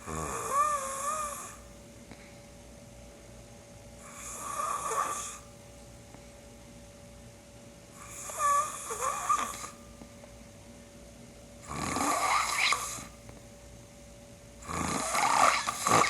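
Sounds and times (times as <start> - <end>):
man snoring: 0.0 - 1.6, 4.1 - 5.4, 8.0 - 9.8, 11.6 - 13.1, 14.6 - 16.0.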